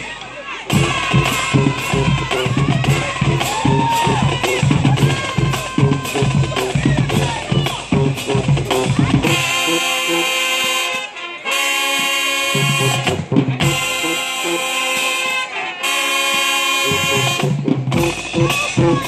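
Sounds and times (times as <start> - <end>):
drum hits: 0.7 - 9.8, 12.6 - 14.2, 16.8 - 19.0
brass section playing chords: 0.7 - 19.0.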